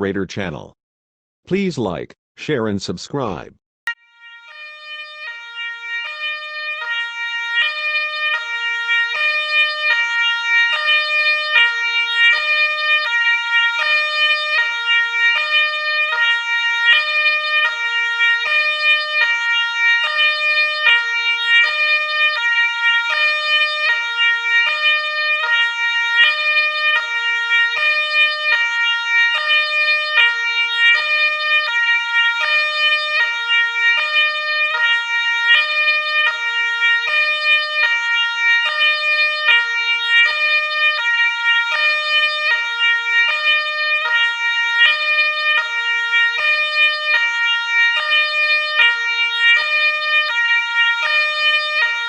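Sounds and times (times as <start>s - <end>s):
two-tone ambulance siren: 3.9s - 52.0s.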